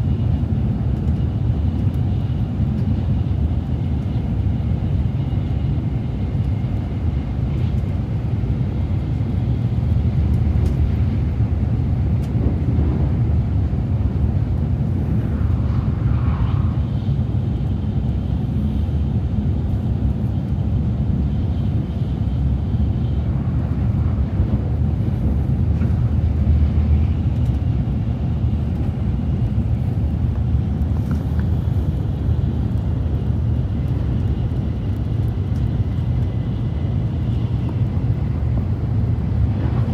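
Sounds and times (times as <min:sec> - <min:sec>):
train rumble inside cabin: 0:00.0 - 0:39.9.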